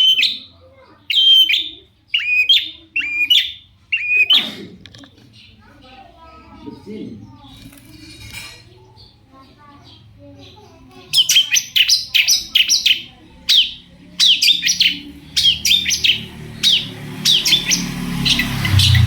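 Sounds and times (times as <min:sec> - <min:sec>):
shrike chirping: 0:11.2 - 0:19.0.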